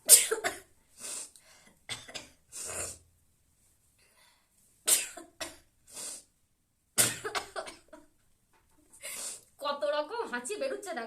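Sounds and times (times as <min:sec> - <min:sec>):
quick breaths drawn: 0:00.9 - 0:01.8, 0:05.9 - 0:06.3, 0:08.9 - 0:09.5.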